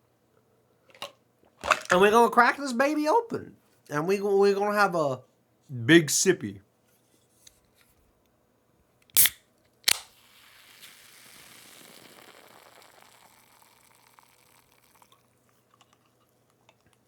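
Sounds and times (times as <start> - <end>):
can tab clicking and popping: 0.9 - 2.2, 9.1 - 10.2
carbonation fizzing hiss: 10.0 - 15.6.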